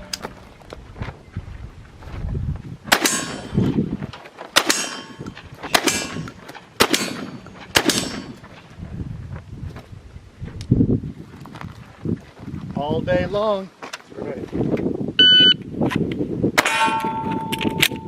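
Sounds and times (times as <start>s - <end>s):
gunshots: 2.9s - 3.7s, 4.6s - 8.4s
bullets ringing on steel targets: 3.0s - 3.6s, 4.6s - 8.4s, 16.6s - 18.0s.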